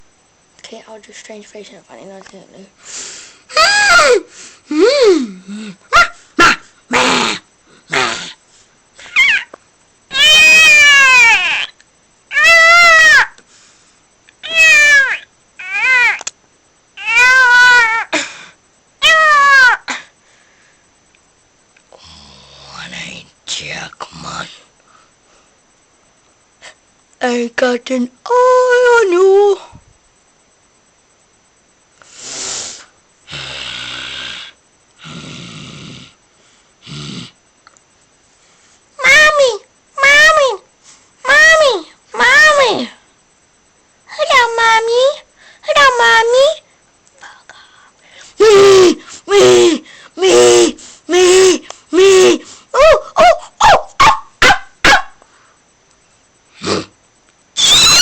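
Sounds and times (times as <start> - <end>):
person making mock snoring noises: 4.7 - 8.4, 22.0 - 22.9, 32.1 - 36.2, 36.8 - 37.4, 56.5 - 57.0
person imitating cat meows: 9.0 - 13.4, 14.4 - 16.3, 17.0 - 18.1, 57.6 - 58.0.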